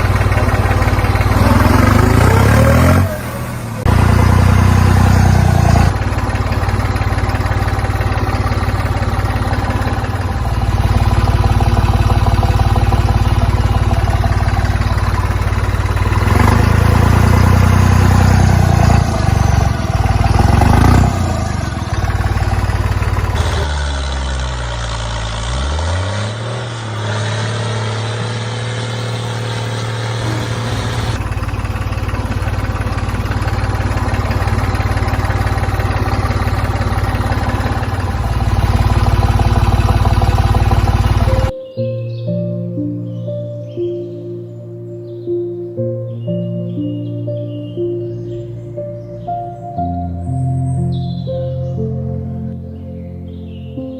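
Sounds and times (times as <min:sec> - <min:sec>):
small motor running: 0:00.0 - 0:41.5.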